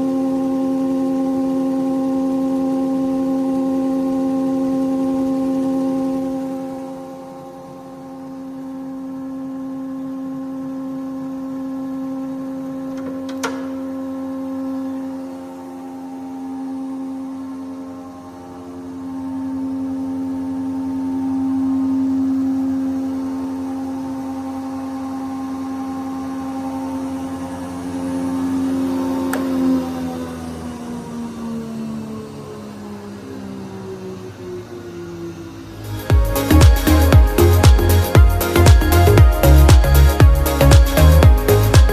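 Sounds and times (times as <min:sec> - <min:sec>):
planer-thicknesser humming: 0:04.0 - 0:41.9
sharp click: 0:13.0 - 0:13.8.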